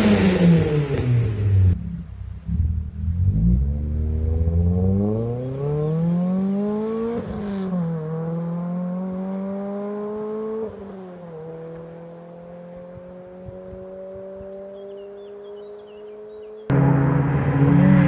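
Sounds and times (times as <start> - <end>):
car engine accelerating hard: 0.0 - 18.0.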